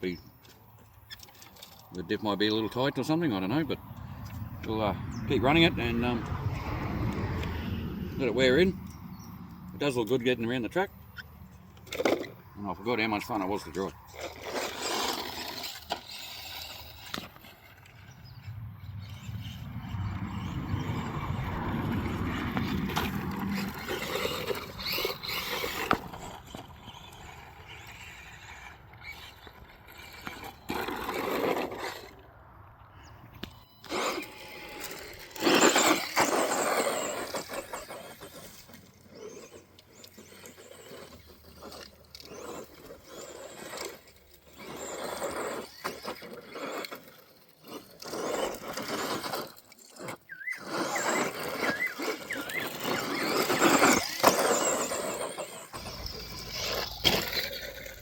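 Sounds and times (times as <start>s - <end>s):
rc car motor and gear whine: 0.0s - 58.0s.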